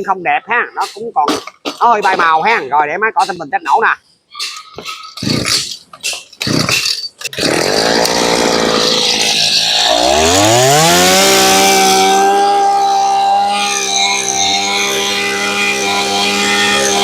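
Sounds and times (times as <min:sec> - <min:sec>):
brush cutter engine revving: 0:06.4 - 0:17.0.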